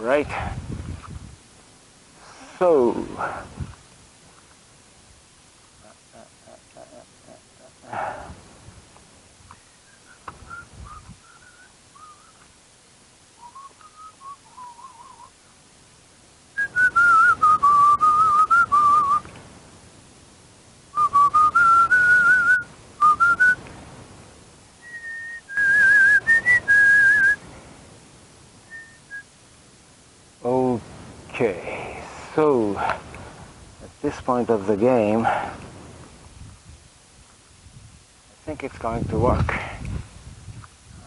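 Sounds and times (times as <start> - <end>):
breathy rushing noise: 7.7 - 8.8
person whistling: 9.9 - 12.4, 13.4 - 15.3, 16.6 - 19.2, 21.0 - 23.6, 24.8 - 27.4, 28.7 - 29.3.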